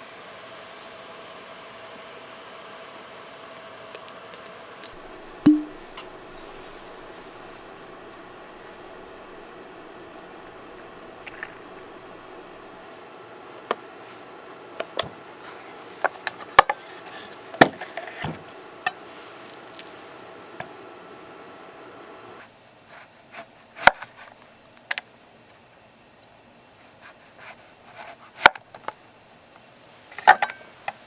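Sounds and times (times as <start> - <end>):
cricket trilling: 0.0 - 15.4
sharp clicks and knocks: 5.0 - 12.7.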